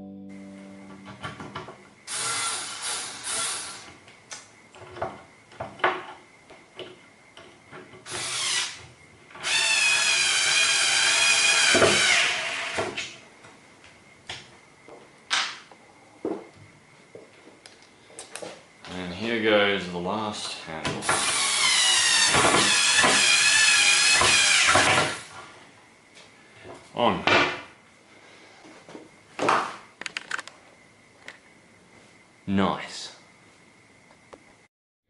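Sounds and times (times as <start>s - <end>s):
power drill whining: 2.1s - 3.9s, 8.1s - 8.8s, 9.4s - 12.8s, 21.0s - 25.3s.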